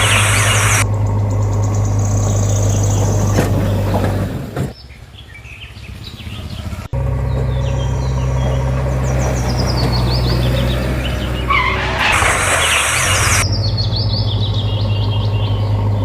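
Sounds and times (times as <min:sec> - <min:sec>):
hiss: 0:00.0 - 0:00.8, 0:11.7 - 0:13.4
birds chirping: 0:00.0 - 0:16.0
engine hum: 0:00.0 - 0:16.0.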